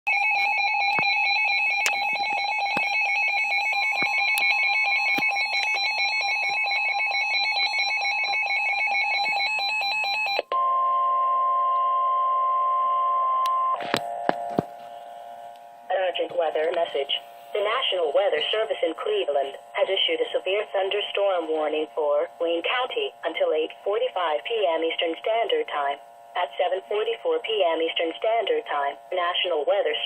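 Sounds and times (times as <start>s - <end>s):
fast repeating electronic alarm: 0.1s - 15.5s, 16.6s - 30.0s
steady warning tone: 0.1s - 30.0s.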